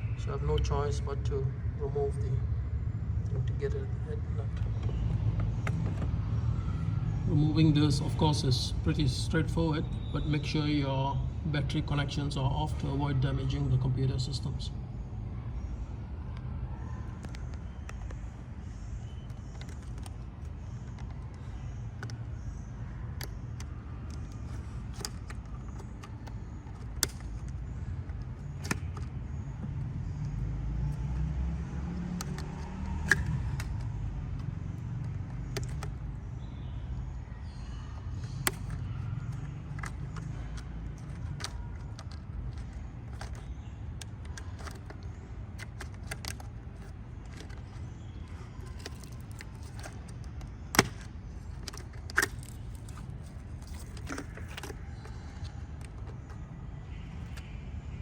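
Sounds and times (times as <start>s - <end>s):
clicks on plastic housing: 4.5s - 6.2s, 17.1s - 57.6s.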